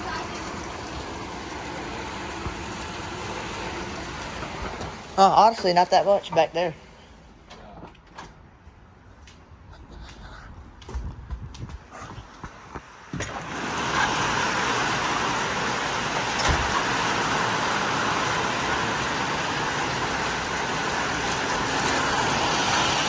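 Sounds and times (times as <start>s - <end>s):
heavy rain: 0.0s - 5.4s, 13.3s - 23.0s
strong wind: 10.3s - 14.5s.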